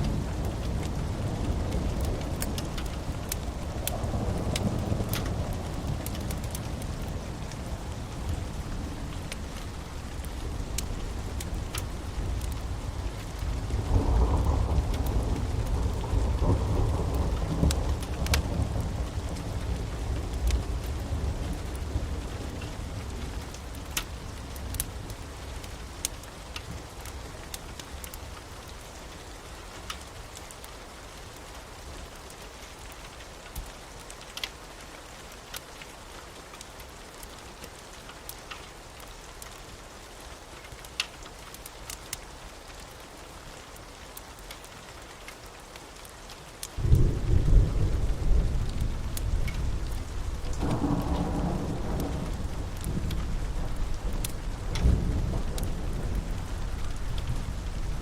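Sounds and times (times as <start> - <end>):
low rumble of thunder: 0.0 - 26.0, 46.8 - 58.0
steady rain: 0.0 - 58.0
loud peal of thunder: 46.8 - 57.7.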